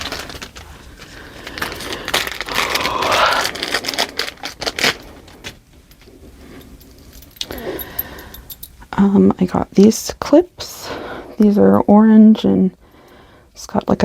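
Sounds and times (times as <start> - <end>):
packaging crinkling and rustling: 0.0 - 6.3.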